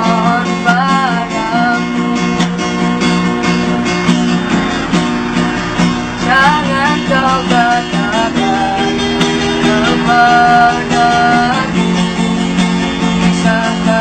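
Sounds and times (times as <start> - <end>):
person singing: 0.0 - 2.4, 6.2 - 12.2, 13.0 - 14.0
strummed acoustic guitar: 0.0 - 14.0.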